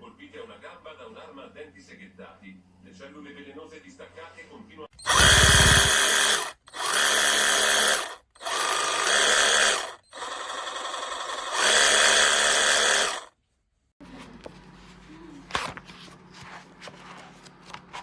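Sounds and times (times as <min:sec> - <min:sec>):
reciprocating saw motor running: 0:05.0 - 0:13.3.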